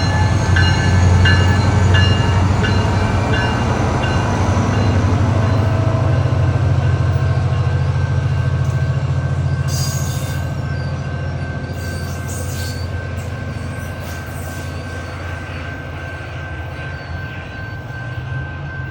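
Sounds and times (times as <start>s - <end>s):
diesel train engine rumble: 0.0s - 18.9s
high squeal: 9.4s - 15.6s.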